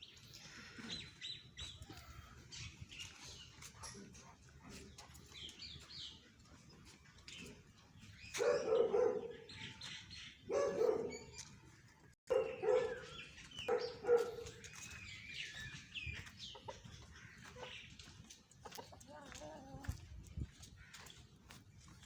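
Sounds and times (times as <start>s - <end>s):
small birds chirping: 0.0s - 22.0s
dog barking: 8.3s - 9.5s, 10.5s - 11.3s, 12.3s - 14.6s.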